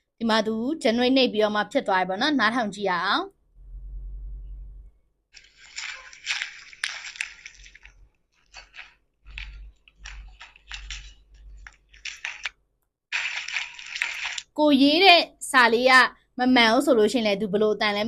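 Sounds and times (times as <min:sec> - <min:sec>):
ceramic cracking and rattling: 0:05.4 - 0:14.4.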